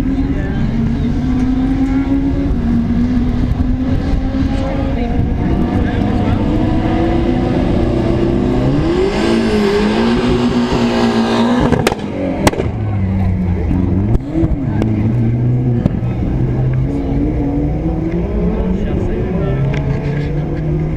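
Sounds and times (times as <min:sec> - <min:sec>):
rally car engines revving: 0:00.0 - 0:20.9
sharp cracks: 0:11.6 - 0:12.8.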